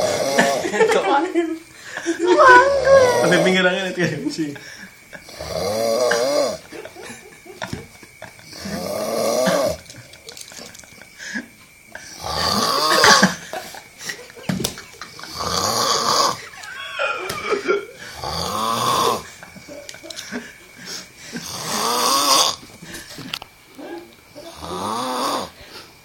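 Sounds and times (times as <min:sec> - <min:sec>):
person snoring: 0:00.0 - 0:00.6, 0:02.4 - 0:03.6, 0:05.2 - 0:06.6, 0:08.4 - 0:09.8, 0:12.0 - 0:13.3, 0:15.2 - 0:16.5, 0:18.0 - 0:19.3, 0:21.4 - 0:22.6, 0:24.4 - 0:25.6.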